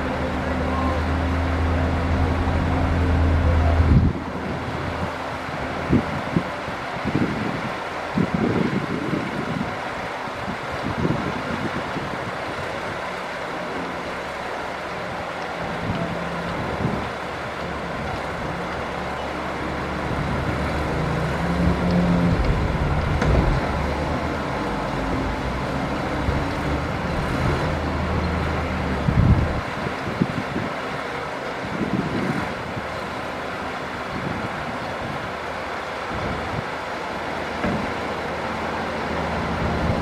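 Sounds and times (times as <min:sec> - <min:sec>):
heavy diesel engine under load: 0:00.0 - 0:40.0.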